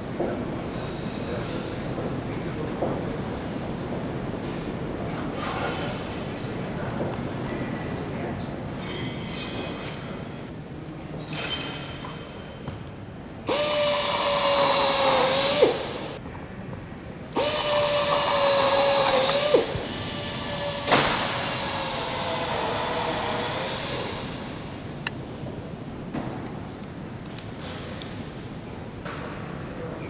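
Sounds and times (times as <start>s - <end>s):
power drill whining: 13.5s - 16.2s, 17.4s - 25.0s.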